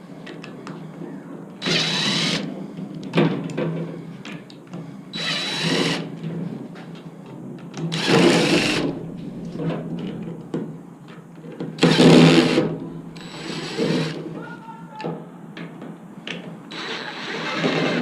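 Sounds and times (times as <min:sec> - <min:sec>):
power drill running: 0:01.6 - 0:02.5, 0:05.2 - 0:06.1, 0:07.9 - 0:09.7, 0:11.8 - 0:14.2, 0:16.7 - 0:18.0.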